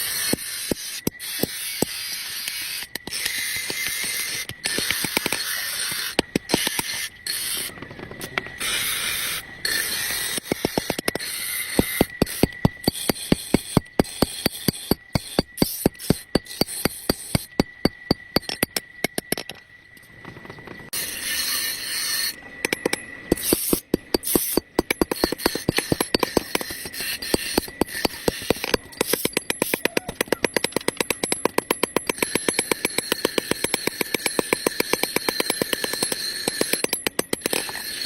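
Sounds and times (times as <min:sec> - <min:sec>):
hiss: 0:08.6 - 0:17.5.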